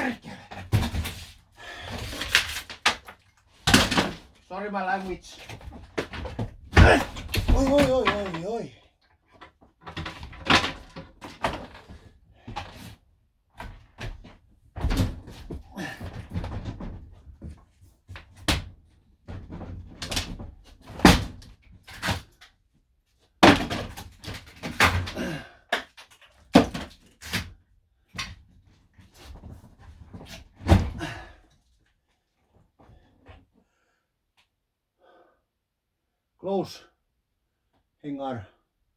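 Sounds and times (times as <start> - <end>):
wood rattling and scraping: 0.5 - 8.6, 9.8 - 13.0
wooden fittings knocking and banging: 5.0 - 8.6, 9.4 - 12.8.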